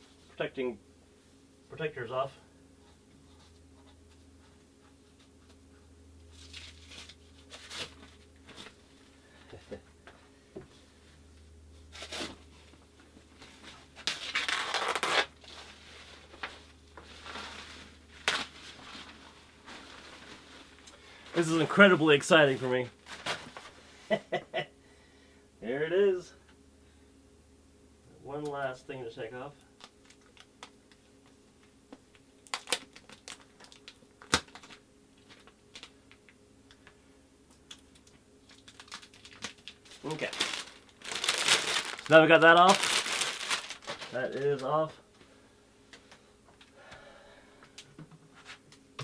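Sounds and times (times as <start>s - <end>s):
faint steady hum: 0.0s - 49.0s
plastic film rustling: 6.3s - 8.8s, 13.4s - 23.8s, 32.5s - 36.0s, 37.9s - 44.9s
plastic wrapping crinkling: 13.6s - 23.8s, 32.4s - 36.2s, 37.9s - 44.7s
sharp plastic crackle: 14.0s - 15.5s, 17.2s - 21.6s, 32.4s - 36.2s, 37.7s - 44.7s.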